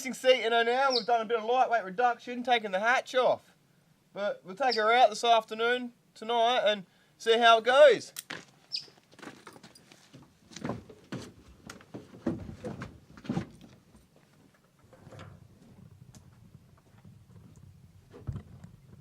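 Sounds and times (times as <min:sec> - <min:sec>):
sharp knocks and clunks: 0:10.5 - 0:13.8.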